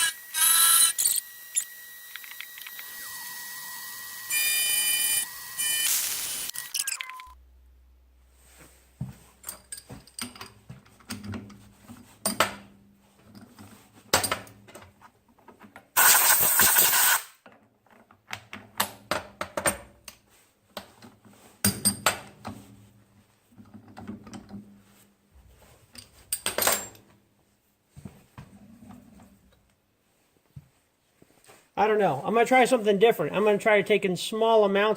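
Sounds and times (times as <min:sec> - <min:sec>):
metallic clinks and knocks: 0:09.4 - 0:11.4.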